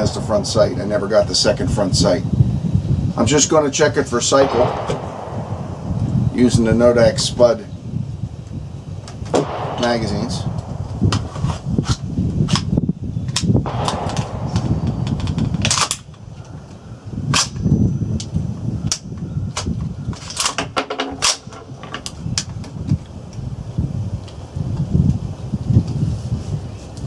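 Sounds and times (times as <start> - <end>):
wind rumble on microphone: 0.0 - 27.0
rifle clicks and cracks: 13.4 - 16.2.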